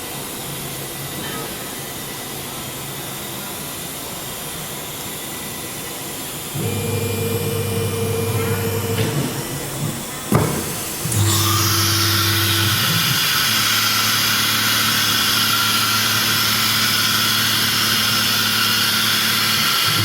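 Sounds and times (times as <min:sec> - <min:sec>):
cnc router machine hum: 0:06.5 - 0:20.0
motor low tone: 0:06.6 - 0:09.2, 0:11.0 - 0:13.1.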